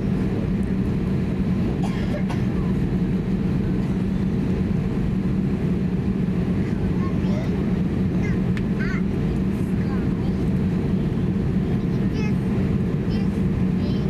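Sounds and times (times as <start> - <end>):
airplane cabin rumble: 0.0 - 14.0.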